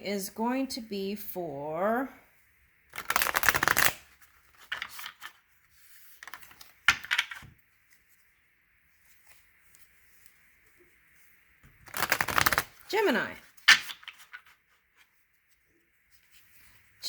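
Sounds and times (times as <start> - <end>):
cards being shuffled: 2.9 - 8.1, 11.6 - 15.1.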